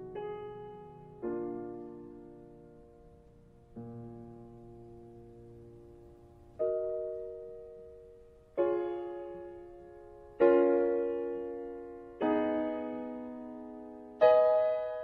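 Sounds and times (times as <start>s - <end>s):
piano chords: 0.0s - 15.0s.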